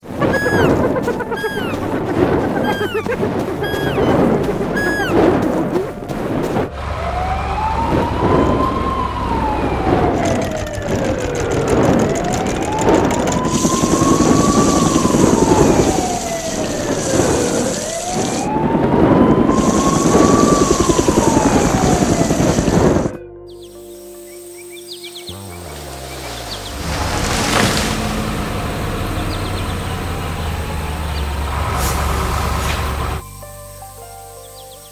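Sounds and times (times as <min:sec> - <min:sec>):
emergency siren wailing: 0:00.0 - 0:05.4, 0:06.7 - 0:23.2, 0:26.7 - 0:33.2
dense rumbling background: 0:00.0 - 0:23.2.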